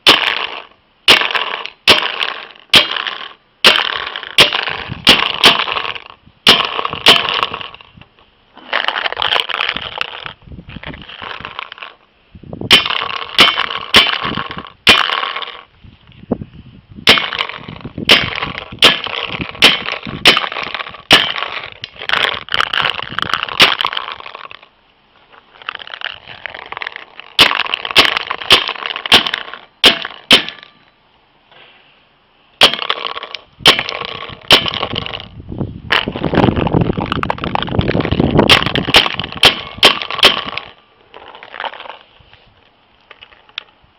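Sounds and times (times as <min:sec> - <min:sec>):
paintball gun firing pops: 0:37.0 - 0:40.7.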